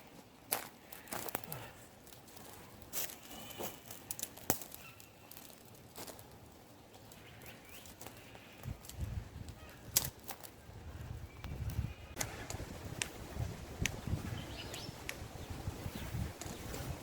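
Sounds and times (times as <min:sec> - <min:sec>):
campfire crackling and popping: 0:03.8 - 0:15.4.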